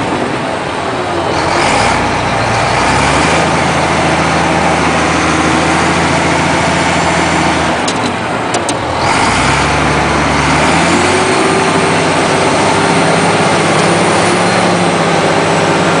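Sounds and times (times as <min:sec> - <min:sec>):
bulldozer diesel engine running: 0:00.0 - 0:16.0
engine whine: 0:00.0 - 0:16.0.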